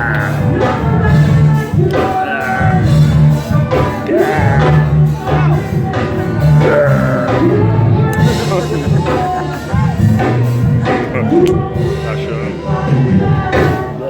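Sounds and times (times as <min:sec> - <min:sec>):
repeating bass line: 0:00.0 - 0:13.5
music with singing: 0:00.0 - 0:14.0.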